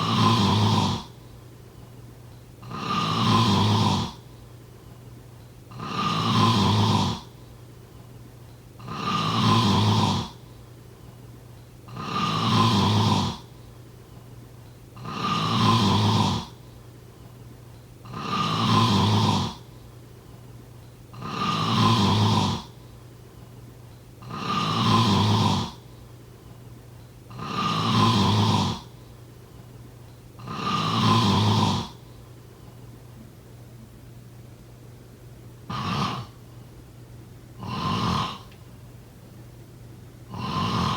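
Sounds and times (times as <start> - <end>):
person snoring: 0.0 - 1.2, 2.6 - 4.2, 5.7 - 7.3, 8.8 - 10.4, 11.9 - 13.5, 15.0 - 16.6, 18.0 - 19.7, 21.2 - 22.8, 24.2 - 25.8, 27.3 - 28.9, 30.4 - 32.0, 35.7 - 36.4, 37.6 - 38.6, 40.3 - 40.9
quiet breathing: 0.0 - 2.0, 2.6 - 33.4.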